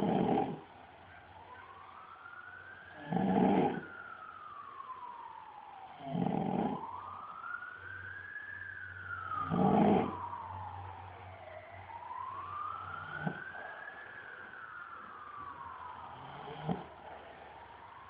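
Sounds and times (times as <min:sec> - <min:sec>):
man snoring: 0:00.0 - 0:00.7, 0:03.0 - 0:03.9, 0:06.0 - 0:06.9, 0:09.4 - 0:10.2, 0:16.1 - 0:16.9
siren wailing: 0:00.0 - 0:18.0.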